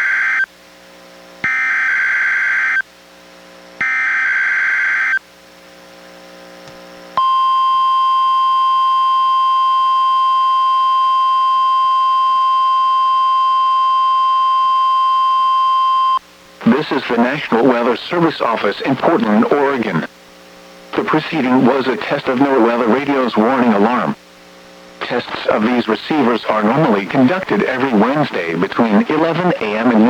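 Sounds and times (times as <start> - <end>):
steady warning alarm tone: 1.4 - 2.8, 3.8 - 5.2, 7.2 - 18.0.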